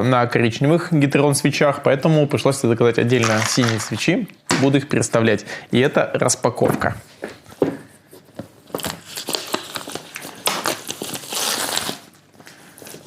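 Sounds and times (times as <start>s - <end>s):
wrapping crinkling and rustling: 3.1s - 4.1s, 8.7s - 13.0s.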